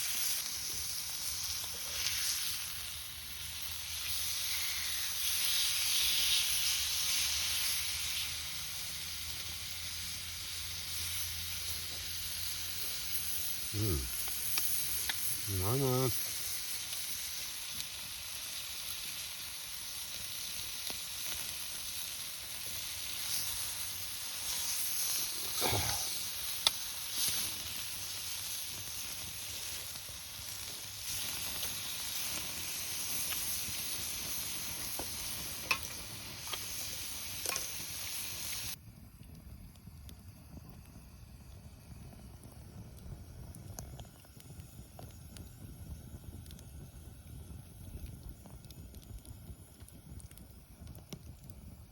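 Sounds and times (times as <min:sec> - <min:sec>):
food sizzling in a pan: 0:00.0 - 0:38.9, 0:39.8 - 0:51.9
low rumble with faint ticks: 0:39.2 - 0:51.9.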